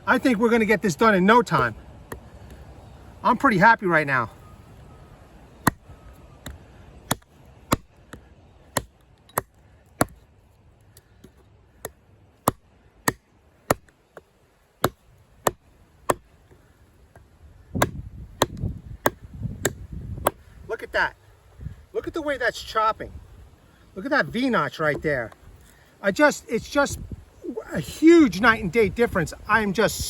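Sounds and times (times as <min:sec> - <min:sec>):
blade chopping into log: 0:05.6 - 0:10.2, 0:11.2 - 0:16.3, 0:17.8 - 0:20.4.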